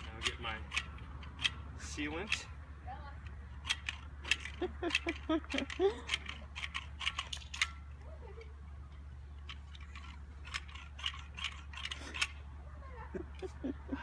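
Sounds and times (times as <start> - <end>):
light clicks of handled tools: 3.2 - 12.4.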